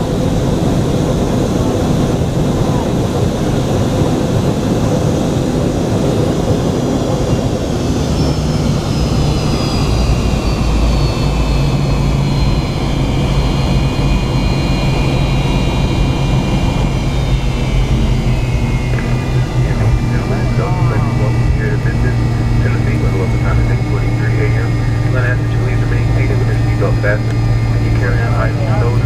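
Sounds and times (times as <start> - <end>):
high engine whine: 0.0 - 29.0
airplane cabin rush: 15.8 - 29.0.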